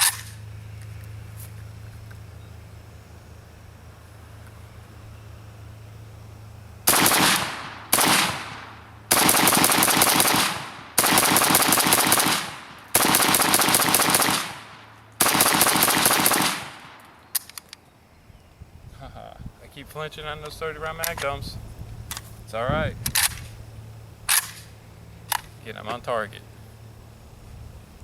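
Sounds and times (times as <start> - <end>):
rifle firing rapid shots: 6.9 - 17.0.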